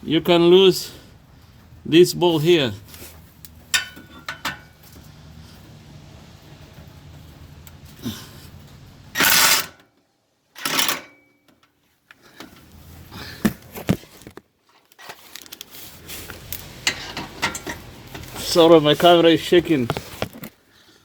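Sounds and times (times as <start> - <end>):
metal tools clinking: 3.6 - 5.0, 16.4 - 20.1
impact wrench bursts: 9.1 - 9.8, 10.6 - 11.2.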